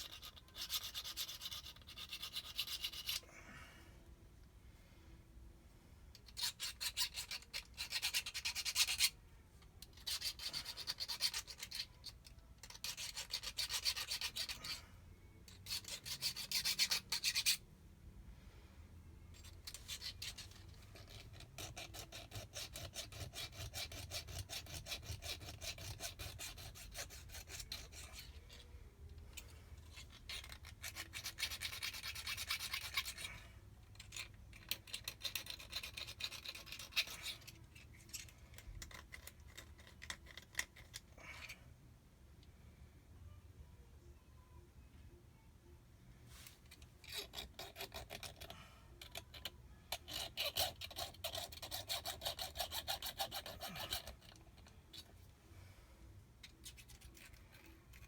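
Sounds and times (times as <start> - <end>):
hand file rasping on metal: 0.0 - 3.2, 6.2 - 9.2, 9.8 - 14.8, 15.5 - 17.6, 19.4 - 28.7, 29.8 - 41.0, 47.0 - 55.1.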